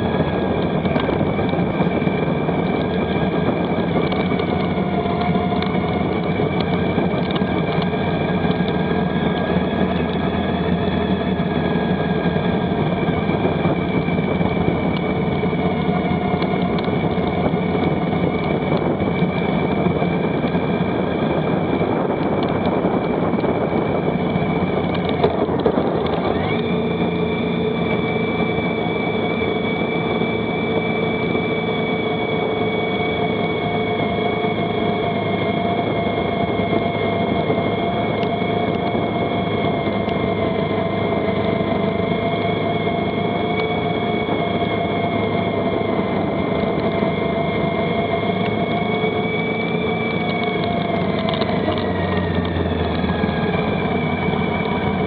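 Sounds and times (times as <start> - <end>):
motorcycle engine cruising: 0.0 - 55.0.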